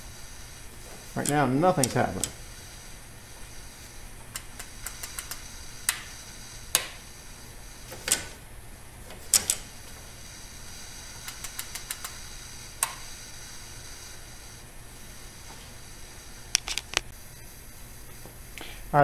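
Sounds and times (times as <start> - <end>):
steady low hum: 0.0 - 19.0
small rapid ticks: 4.3 - 6.1, 11.2 - 12.2.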